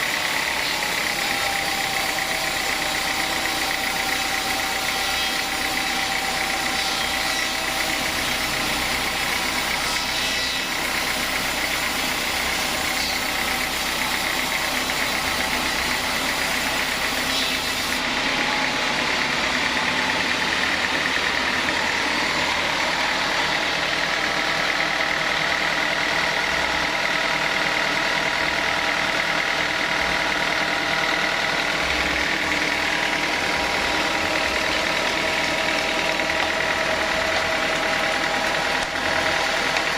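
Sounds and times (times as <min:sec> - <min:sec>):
sawmill saw cutting wood: 0:00.0 - 0:39.9.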